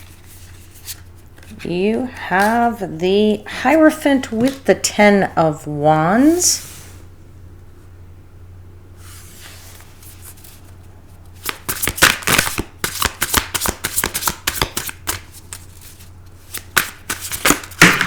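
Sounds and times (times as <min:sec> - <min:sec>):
cards being shuffled: 0:00.0 - 0:02.7, 0:04.3 - 0:04.7, 0:09.2 - 0:18.0.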